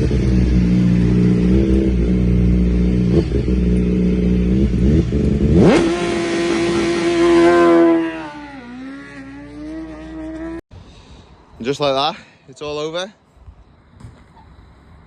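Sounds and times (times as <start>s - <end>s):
motorcycle engine revving: 0.0s - 10.6s.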